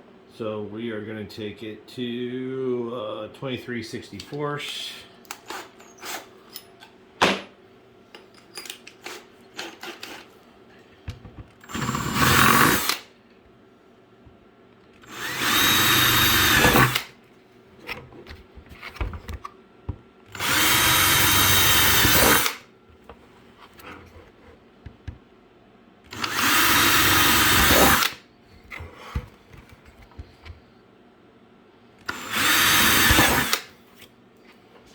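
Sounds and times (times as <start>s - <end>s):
power drill boring plastic: 9.0s - 10.3s, 11.6s - 13.0s, 15.0s - 17.0s, 20.3s - 22.6s, 26.1s - 28.2s, 32.1s - 33.7s
handling knocks and clicks: 11.0s - 11.6s, 28.6s - 30.6s.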